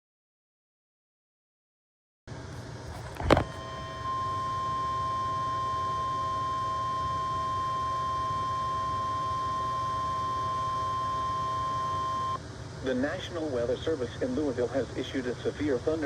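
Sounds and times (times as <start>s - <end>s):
steady high alarm tone: 3.6s - 12.4s.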